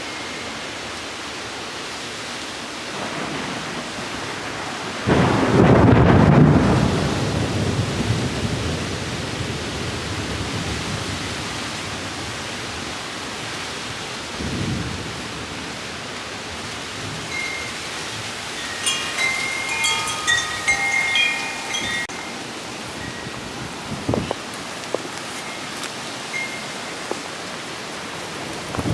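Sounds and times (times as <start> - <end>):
wind chimes ringing: 0.0 - 1.6, 17.3 - 27.7
steady rain: 0.0 - 28.9
thunder crack and rumble: 2.9 - 11.5, 28.5 - 28.9.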